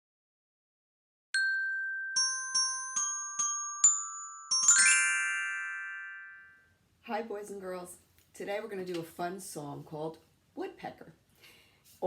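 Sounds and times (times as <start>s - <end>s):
bell-like intro jingle: 1.4s - 6.7s.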